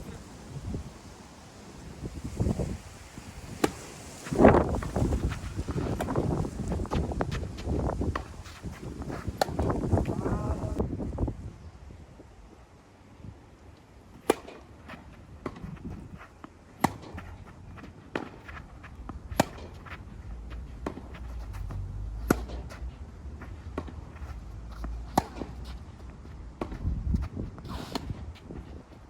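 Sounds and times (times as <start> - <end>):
wind rumble on microphone: 0.0 - 1.2, 1.8 - 12.6, 15.5 - 16.3, 18.8 - 29.0
tennis ball bouncing: 3.5 - 8.4, 16.3 - 26.8
tennis balls struck by rackets: 3.5 - 8.4, 9.2 - 10.8, 14.2 - 22.8, 23.4 - 26.8, 27.6 - 28.3
scuffing footsteps: 4.2 - 10.1.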